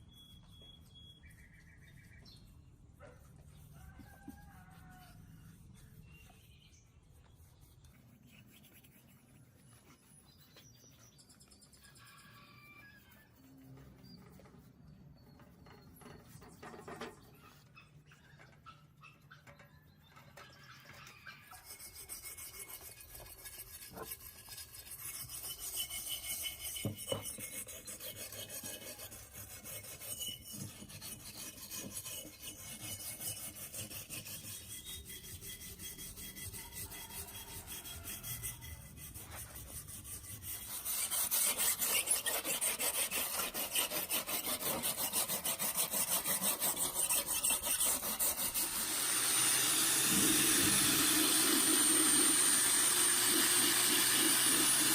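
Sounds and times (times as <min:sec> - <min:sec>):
file rasping on rusty metal: 0:03.0 - 0:06.6, 0:07.4 - 0:54.9.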